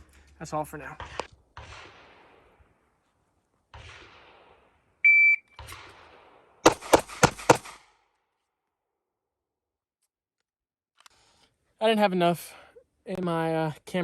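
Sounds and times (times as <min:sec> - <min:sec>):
shot timer beep: 0:05.0 - 0:05.6
handgun shots: 0:05.6 - 0:07.9.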